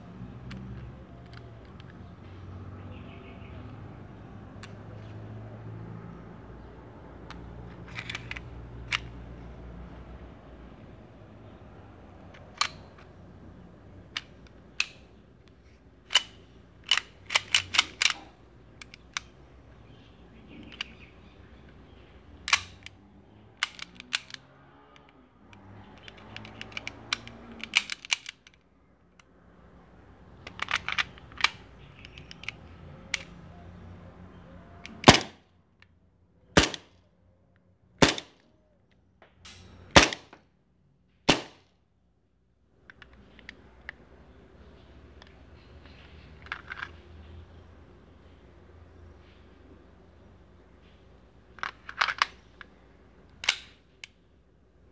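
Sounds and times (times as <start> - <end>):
sharp metallic clicks: 7.3 - 9.2, 12.3 - 13.2, 14.0 - 29.3, 30.4 - 33.4, 34.8 - 35.9, 51.6 - 54.2
airsoft pistol shots: 38.0 - 38.4, 40.0 - 40.4, 41.3 - 41.6.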